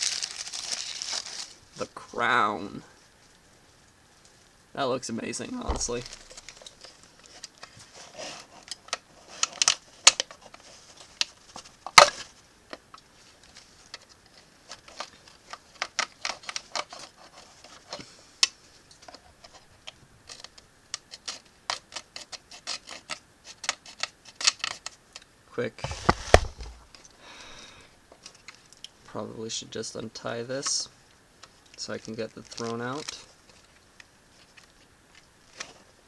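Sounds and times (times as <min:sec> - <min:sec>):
plastic packaging crackling: 0:00.0 - 0:01.5
sharp knocks: 0:05.7 - 0:06.5, 0:25.8 - 0:26.9.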